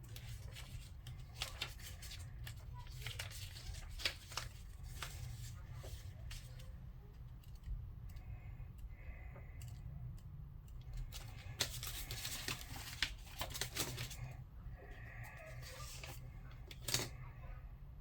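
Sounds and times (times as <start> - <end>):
packaging rustling and scraping: 0.0 - 6.7, 11.0 - 14.4, 15.2 - 17.2.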